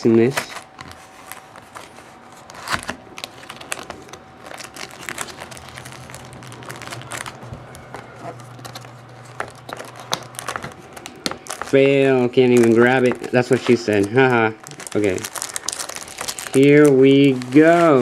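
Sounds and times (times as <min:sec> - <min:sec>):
faint low hum: 0:00.0 - 0:18.0
packaging crinkling and rustling: 0:00.0 - 0:18.0.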